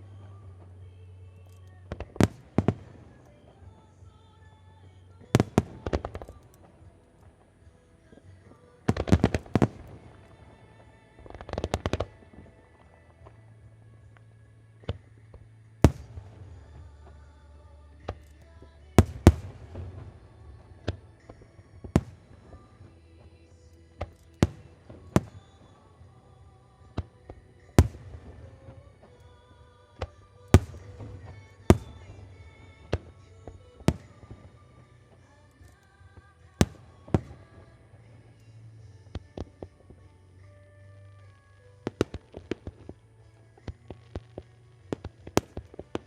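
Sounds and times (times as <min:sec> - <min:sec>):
music playing: 0:00.0 - 0:46.0
fireworks bangs: 0:08.9 - 0:12.6, 0:15.8 - 0:17.3, 0:18.0 - 0:22.9, 0:30.0 - 0:34.6.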